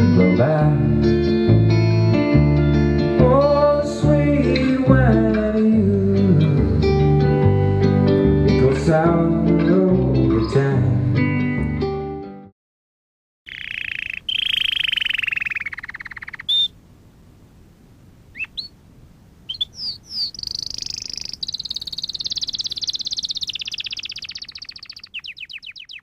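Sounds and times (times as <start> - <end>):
high-pitched animal calls: 13.5 - 16.8, 18.3 - 18.8, 19.5 - 26.0.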